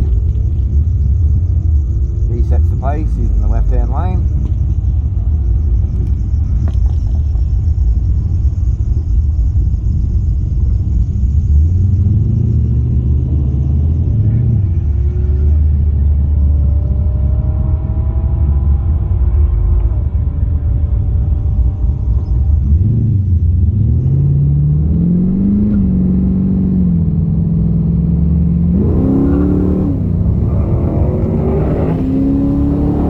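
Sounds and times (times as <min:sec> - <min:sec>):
car engine rumbling: 0:00.0 - 0:33.0.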